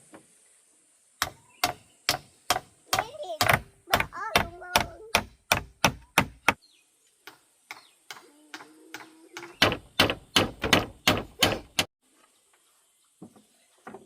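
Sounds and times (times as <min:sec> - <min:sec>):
hand tool striking wood: 0:01.2 - 0:06.6, 0:07.2 - 0:11.9.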